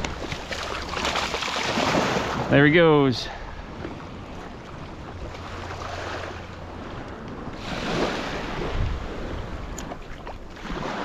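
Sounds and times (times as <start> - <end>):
ocean surf washing in: 1.4 - 9.8
wind on microphone: 3.5 - 11.0.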